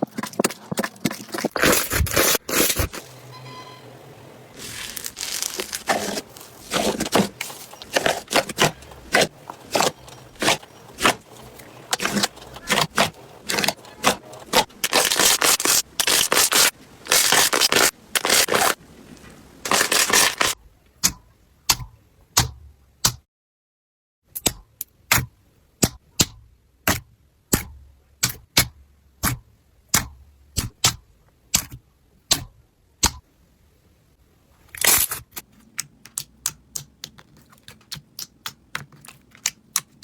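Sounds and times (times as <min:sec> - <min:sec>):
slime squeezed crackling and popping: 0:04.6 - 0:06.8, 0:11.9 - 0:18.7.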